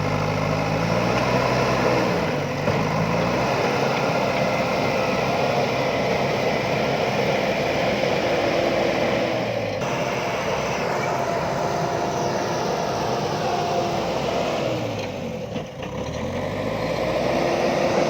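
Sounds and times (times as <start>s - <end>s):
diesel engine running: 0.0s - 18.0s.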